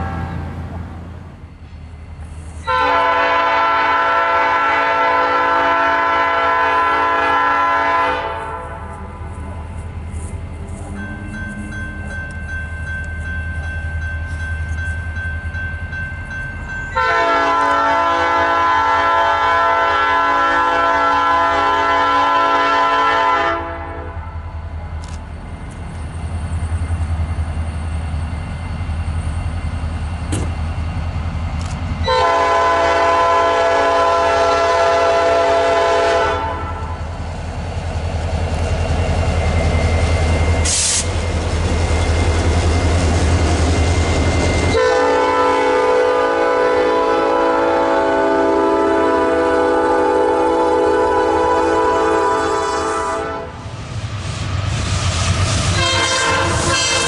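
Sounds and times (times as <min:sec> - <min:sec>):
locomotive horn chord: 0:00.0 - 0:01.4, 0:02.7 - 0:09.2, 0:17.0 - 0:24.4, 0:32.0 - 0:37.1, 0:44.7 - 0:53.6, 0:55.7 - 0:57.0
train rumble: 0:00.0 - 0:57.0.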